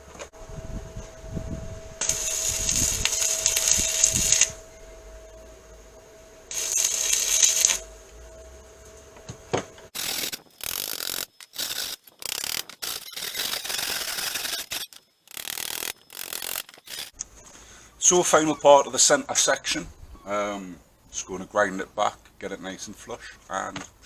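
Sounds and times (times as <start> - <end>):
arc welding crackling hiss: 2.0 - 4.6, 6.5 - 7.8, 10.0 - 17.1
scraping and rubbing on metal: 10.0 - 17.1.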